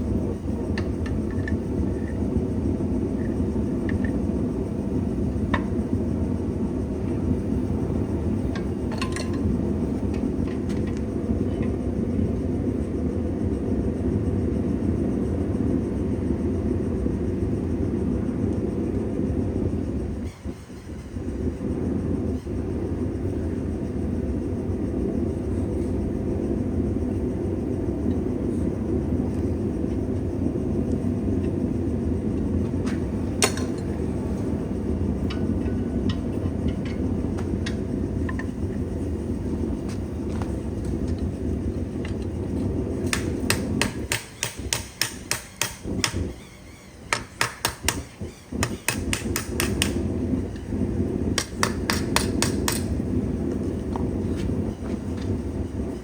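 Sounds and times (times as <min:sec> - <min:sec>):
hammer striking metal: 0:43.1 - 0:46.2.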